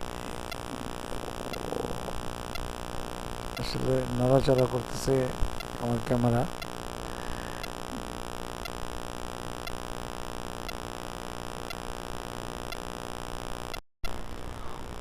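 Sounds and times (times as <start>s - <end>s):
faint regular ticks: 0.0s - 11.0s, 11.6s - 11.9s, 12.6s - 12.9s
electrical hum and hiss: 0.0s - 15.0s.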